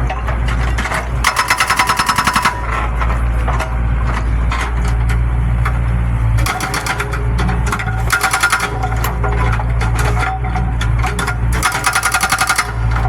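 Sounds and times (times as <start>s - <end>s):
hydraulic breaker hammering: 0.0s - 5.8s, 6.4s - 13.0s
excavator engine running: 0.0s - 13.0s
scattered knocks: 6.4s - 13.0s.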